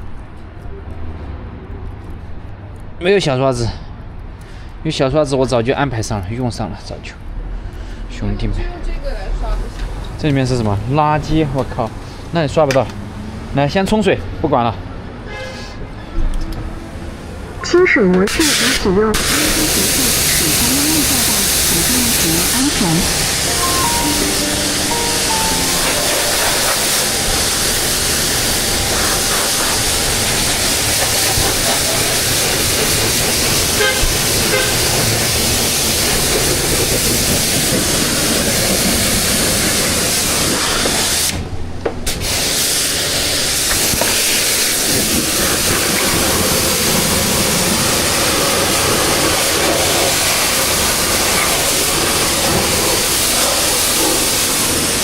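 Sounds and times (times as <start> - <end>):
high-pressure water spray hissing: 18.3 - 41.4, 42.1 - 55.0.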